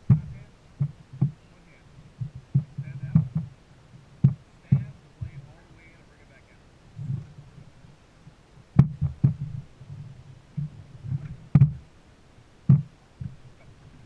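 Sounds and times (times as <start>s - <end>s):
dull thumps: 0.0s - 1.4s, 2.1s - 3.6s, 4.2s - 5.6s, 7.0s - 7.7s, 8.7s - 11.9s, 12.6s - 14.0s
sharp knocks: 0.0s - 1.4s, 2.2s - 3.5s, 4.2s - 5.4s, 8.8s - 9.7s, 10.6s - 11.8s, 12.7s - 13.4s
low rumble: 0.0s - 12.0s.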